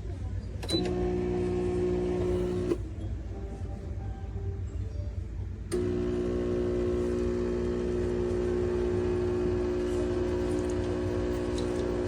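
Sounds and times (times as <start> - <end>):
espresso machine pump humming: 0.8 - 2.8, 5.7 - 12.0.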